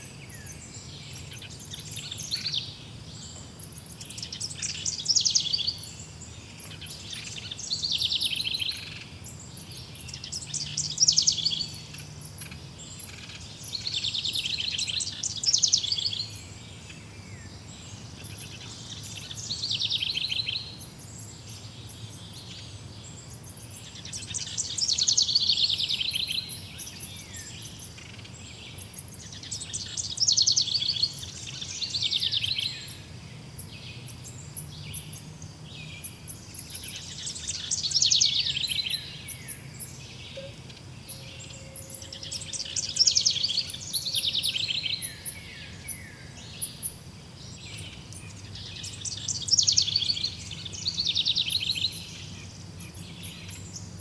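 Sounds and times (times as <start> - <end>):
very high bird chirps: 0.0 - 2.6, 6.6 - 16.4, 36.0 - 47.0
birds singing trilled phrases: 0.0 - 54.0.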